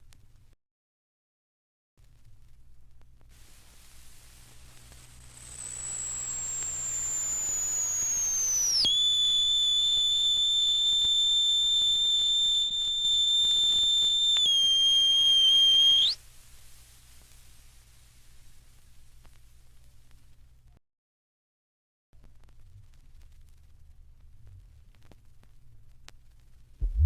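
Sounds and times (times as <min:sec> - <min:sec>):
record hiss and hum: 0:00.0 - 0:00.6, 0:02.0 - 0:20.8, 0:22.2 - 0:27.0
electronic whistling tone: 0:05.4 - 0:16.2.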